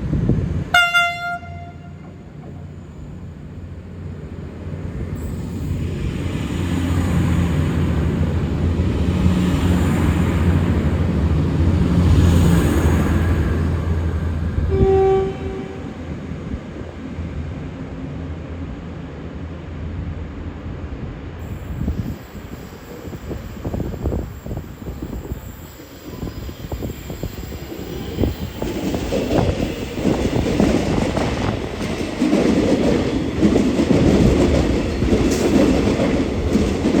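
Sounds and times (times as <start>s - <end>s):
diesel railcar engines droning: 0.0s - 37.0s
train running noise: 0.0s - 37.0s
train wheels clicking on rail joints: 21.8s - 37.0s.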